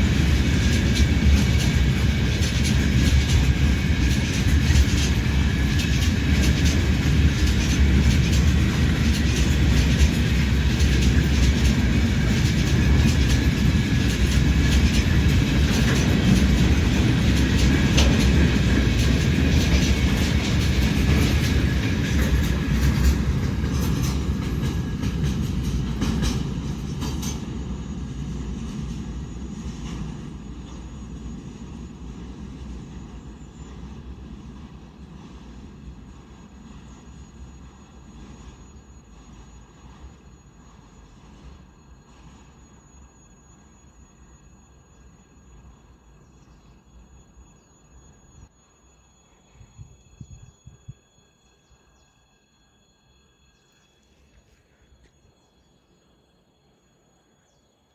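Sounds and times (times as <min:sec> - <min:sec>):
wheels clicking over rail joints: 0:00.0 - 0:27.7
freight train rumble: 0:00.0 - 0:57.8.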